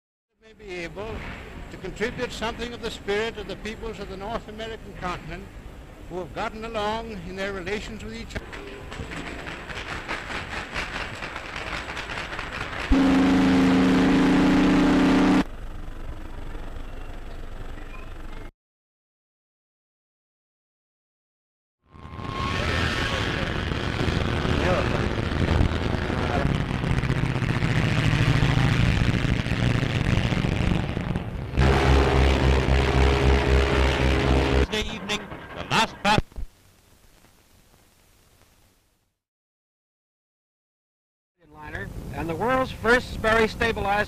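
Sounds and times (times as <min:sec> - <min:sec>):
ship horn blast: 0:12.9 - 0:15.6, 0:31.5 - 0:35.6
film hiss and crackle: 0:34.7 - 0:39.2.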